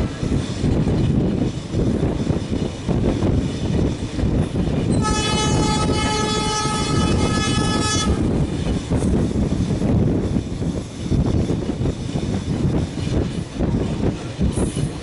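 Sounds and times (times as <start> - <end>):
train rumbling on rails: 0.0 - 15.0
locomotive air horn blast: 5.0 - 8.3.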